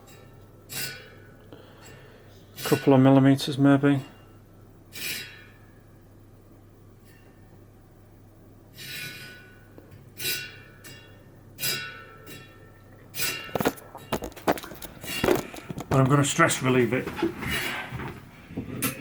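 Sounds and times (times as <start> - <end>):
metallic pings from bicycle wheel: 0.0 - 2.0, 4.0 - 5.8, 8.8 - 13.5
clicks and clatter: 13.5 - 16.2.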